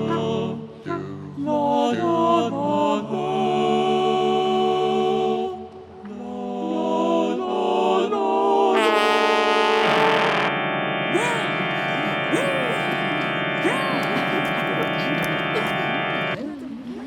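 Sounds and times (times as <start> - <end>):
voices singing chant in harmony: 0.0 - 16.4.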